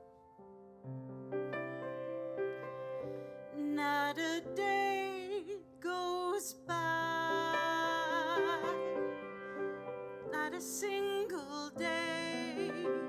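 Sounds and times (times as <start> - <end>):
woman singing with vibrato: 3.6 - 9.1, 10.3 - 13.0.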